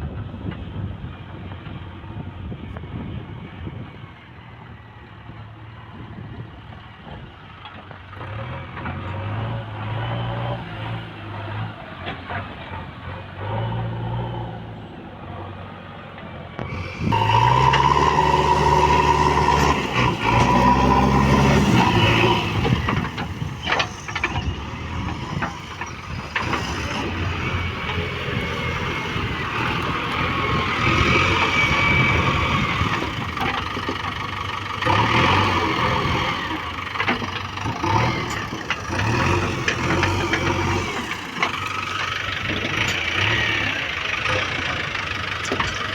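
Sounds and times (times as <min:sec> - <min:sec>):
diesel engines working: 0:00.0 - 0:45.9
engine revving up hard: 0:16.6 - 0:45.8.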